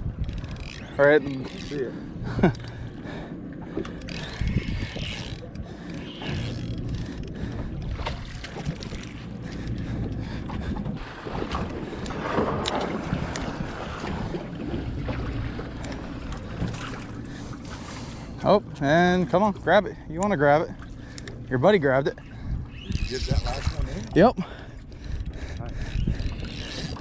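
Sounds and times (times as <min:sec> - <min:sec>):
wind on microphone: 0:00.0 - 0:02.8, 0:04.1 - 0:17.4, 0:22.2 - 0:27.0
low steady hum: 0:00.0 - 0:27.0
water noise: 0:00.0 - 0:27.0.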